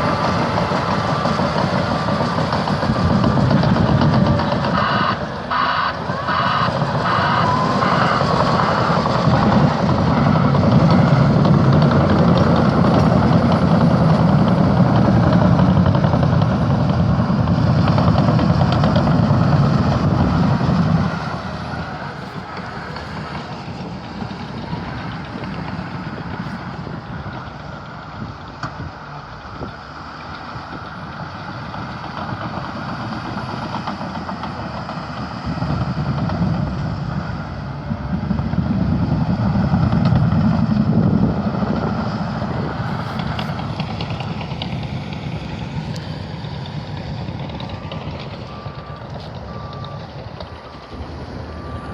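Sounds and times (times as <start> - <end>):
reversing alarm beeping: 0.0 - 11.4, 42.7 - 51.9
heavy diesel engine running: 0.0 - 51.9.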